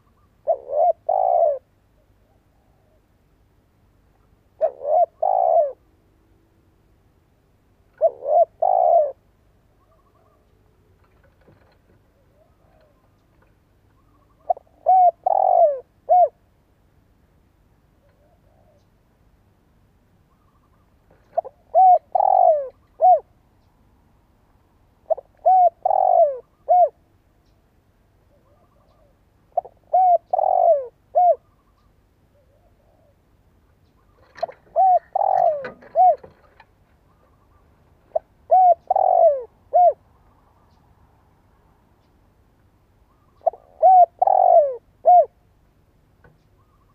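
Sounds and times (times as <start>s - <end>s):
dove cooing: 0.0s - 3.1s, 4.5s - 6.0s, 7.9s - 16.5s, 18.0s - 18.9s, 20.4s - 23.4s, 25.0s - 27.1s, 28.3s - 33.3s, 33.9s - 40.1s, 43.1s - 45.4s.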